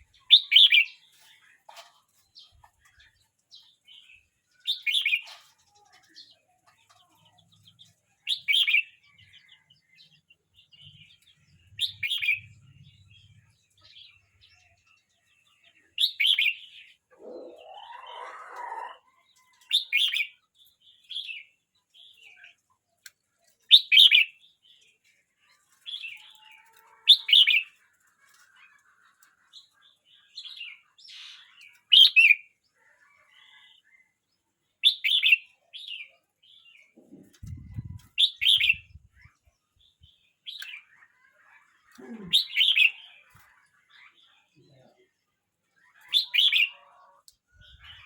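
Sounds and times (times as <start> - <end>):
soft bird chirps: 34.9 - 45.1.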